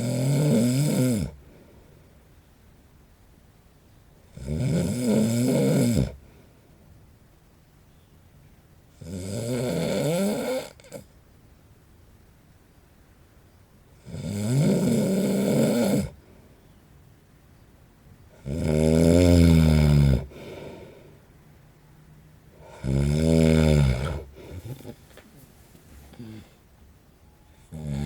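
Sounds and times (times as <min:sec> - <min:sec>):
man snoring loudly: 0:00.0 - 0:01.4, 0:04.3 - 0:06.2, 0:09.0 - 0:11.0, 0:14.0 - 0:16.2, 0:18.4 - 0:20.8, 0:22.6 - 0:25.0, 0:27.7 - 0:28.0.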